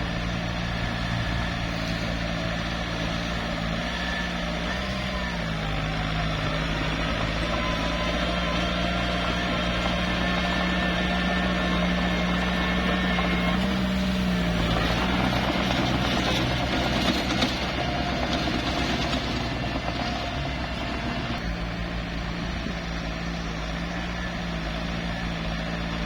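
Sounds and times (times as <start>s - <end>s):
bulldozer diesel engine running: 0.0s - 26.0s.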